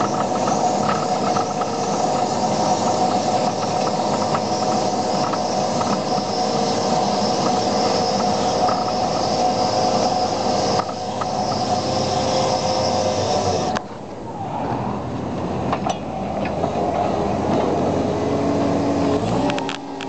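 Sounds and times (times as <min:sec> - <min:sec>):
asphalt milling grinding rumble: 0:00.0 - 0:20.0
hydraulic whine: 0:00.0 - 0:20.0.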